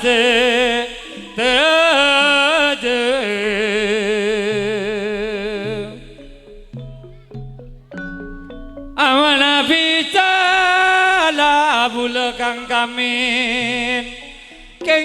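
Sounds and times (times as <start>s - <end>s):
struck notes: 0.0s - 10.0s
ornamented melody with vibrato: 0.0s - 15.0s.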